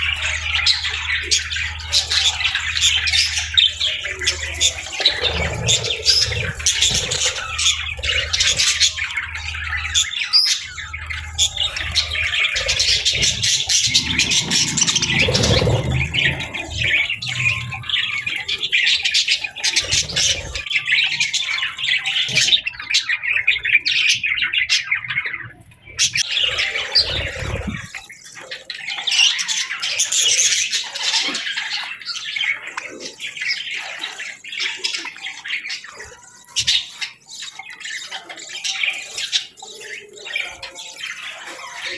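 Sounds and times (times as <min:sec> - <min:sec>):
budgies chattering and chirping: 0:00.0 - 0:41.9
low hum: 0:05.8 - 0:18.8.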